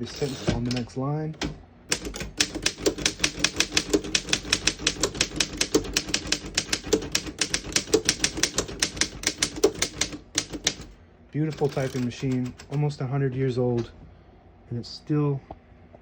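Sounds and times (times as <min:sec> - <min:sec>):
manual typewriter key strikes: 0:00.2 - 0:10.9, 0:11.5 - 0:12.8.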